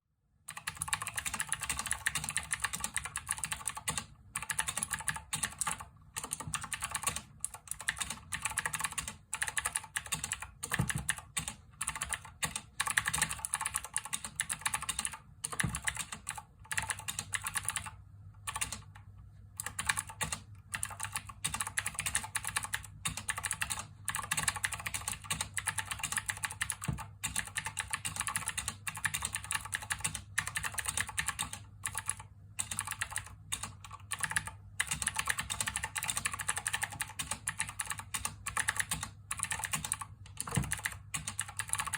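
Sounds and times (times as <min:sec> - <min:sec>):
fast typing on clicky keyboard: 0:00.5 - 0:41.9.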